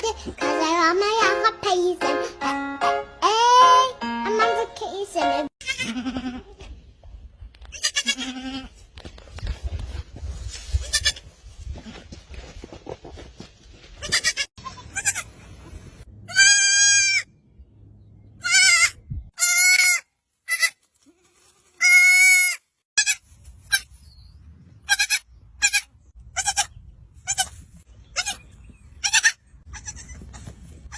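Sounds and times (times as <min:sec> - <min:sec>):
goat kids bleating: 0:05.6 - 0:06.7, 0:07.7 - 0:08.8, 0:14.0 - 0:15.3, 0:16.3 - 0:17.3, 0:18.4 - 0:23.9, 0:24.9 - 0:30.4.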